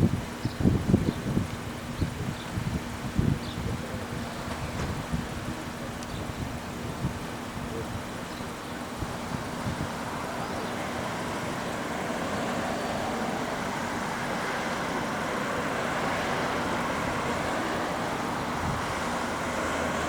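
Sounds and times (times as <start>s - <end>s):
distant jet airliner roar: 8.1s - 20.0s.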